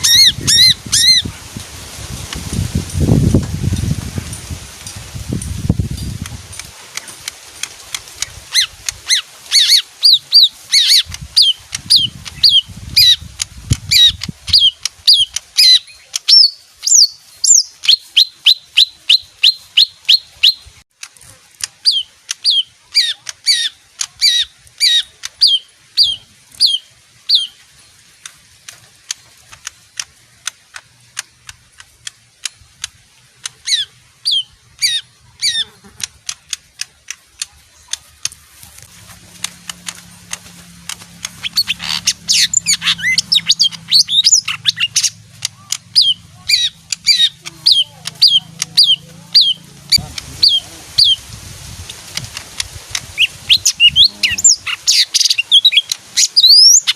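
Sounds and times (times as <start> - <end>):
bird singing whistled notes: 13.9 - 20.8, 21.8 - 28.0, 33.6 - 35.8, 41.2 - 51.2, 53.2 - 56.9.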